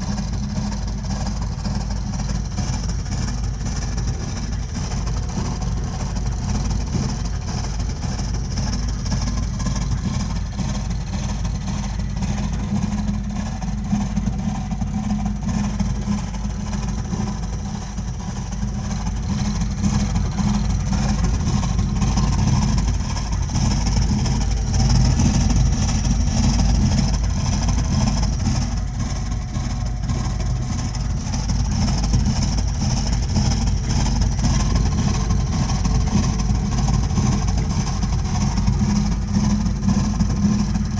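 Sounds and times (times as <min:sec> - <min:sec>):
boiler low-pitched drone: 0:00.0 - 0:40.9.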